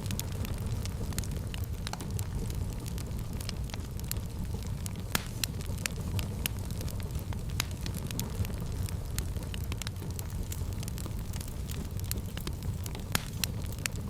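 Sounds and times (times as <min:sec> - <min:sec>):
rumble of flames: 0:00.0 - 0:14.0
fire crackling in fireplace: 0:00.1 - 0:14.0
sharp pops and snaps: 0:10.1 - 0:14.0.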